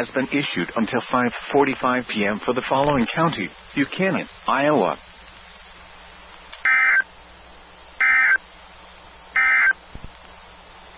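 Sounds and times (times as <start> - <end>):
faint radio hiss: 0.0 - 10.9
harsh digital data bursts: 8.0 - 8.4, 9.4 - 9.8.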